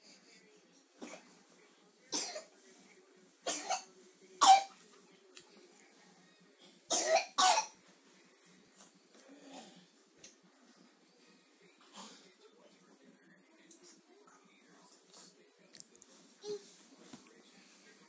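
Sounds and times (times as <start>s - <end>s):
person coughing harshly: 2.1s - 2.5s, 3.5s - 4.7s, 6.9s - 7.8s.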